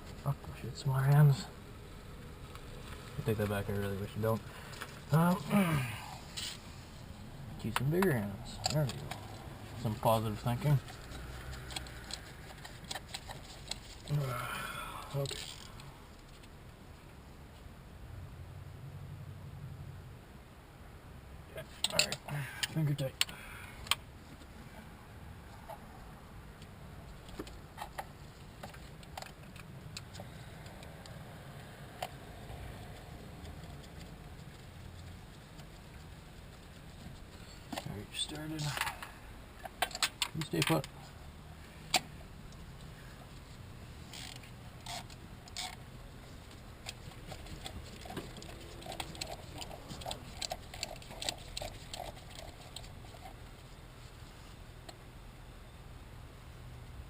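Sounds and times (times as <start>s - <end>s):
low steady hum: 0.0s - 57.0s
metallic clicks of tools and bolts: 21.8s - 24.0s, 38.6s - 41.0s
metal parts and tools clicking: 46.8s - 53.4s.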